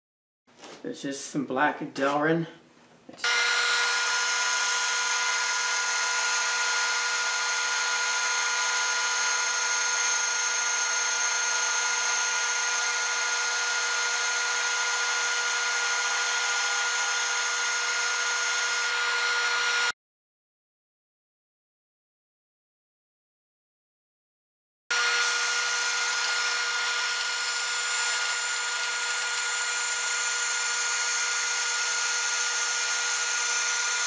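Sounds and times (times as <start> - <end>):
band saw cutting plastic: 3.2 - 19.9, 24.9 - 34.0
band saw whine: 3.2 - 20.0, 24.9 - 34.0.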